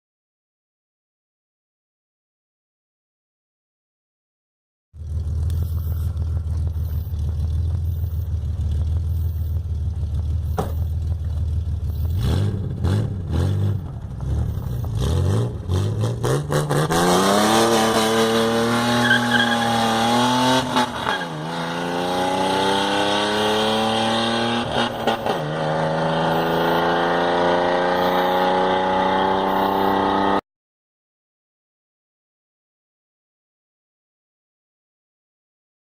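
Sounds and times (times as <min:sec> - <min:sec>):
car engine idling and revving: 0:05.0 - 0:30.4.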